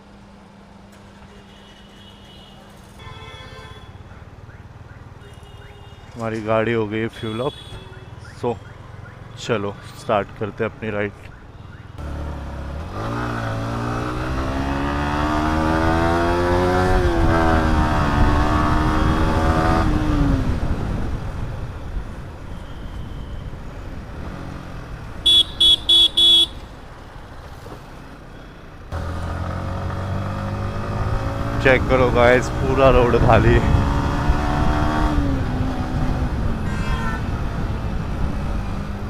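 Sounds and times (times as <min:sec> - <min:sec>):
horn beeps: 0:03.0 - 0:06.2, 0:22.5 - 0:23.6, 0:25.2 - 0:26.6
motorcycle engine accelerating: 0:12.0 - 0:21.1, 0:28.9 - 0:36.6.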